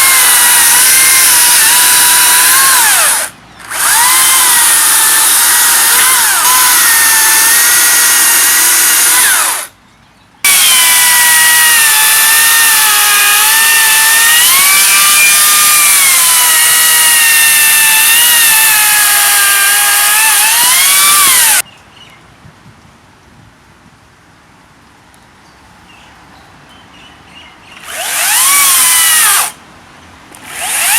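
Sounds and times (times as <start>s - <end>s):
electric chainsaw cutting wood: 0.0s - 9.7s, 10.5s - 21.6s, 27.8s - 29.6s, 30.4s - 30.9s.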